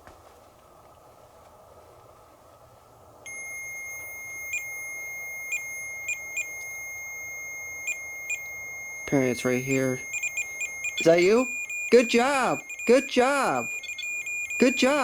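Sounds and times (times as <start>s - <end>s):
short electronic chirps: 3.3s - 15.0s
steady high beep tone: 3.3s - 15.0s.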